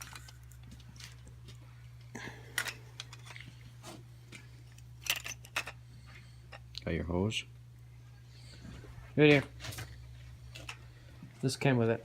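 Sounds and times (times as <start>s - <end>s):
steady low hum: 0.0s - 12.0s
small parts clicking and tapping: 4.3s - 5.8s.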